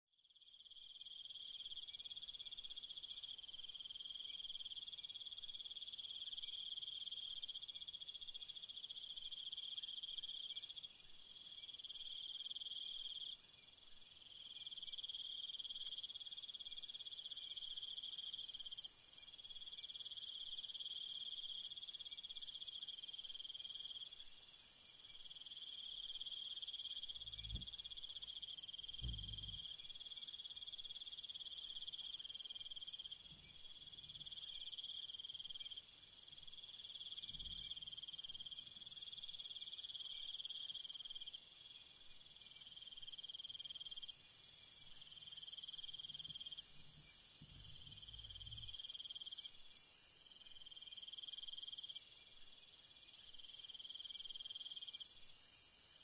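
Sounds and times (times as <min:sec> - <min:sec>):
crickets and insects trilling: 0:26.6 - 0:28.0, 0:28.6 - 0:30.7, 0:45.6 - 0:49.0
low thump: 0:29.0 - 0:29.6.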